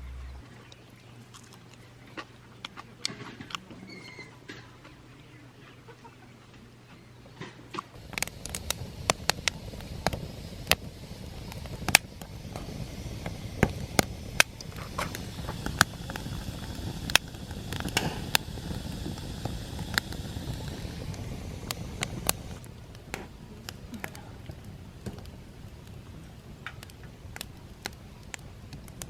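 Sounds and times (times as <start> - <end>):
low steady rumble: 0.0 - 1.2, 8.0 - 26.2
sharp pops and crackles: 7.4 - 29.0.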